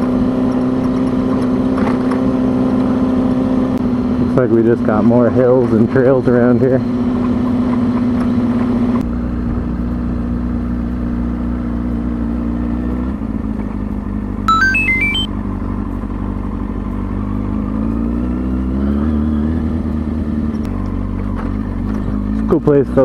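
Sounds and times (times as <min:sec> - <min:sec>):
electronic beeps rising in pitch: 0:14.5 - 0:15.3.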